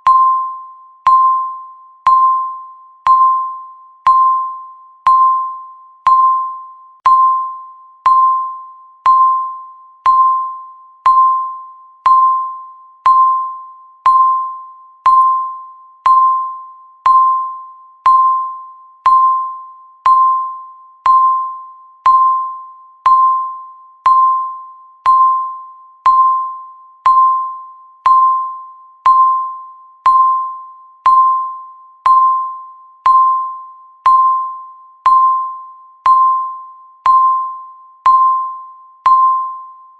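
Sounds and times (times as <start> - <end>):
timer bell ding: 0.0 - 39.9.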